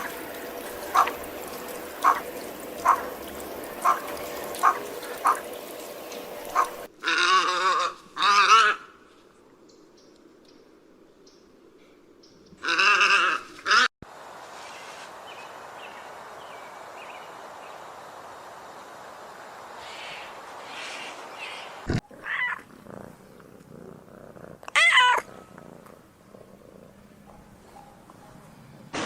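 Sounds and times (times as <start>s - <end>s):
rough purr-like sound: 21.9s - 27.2s.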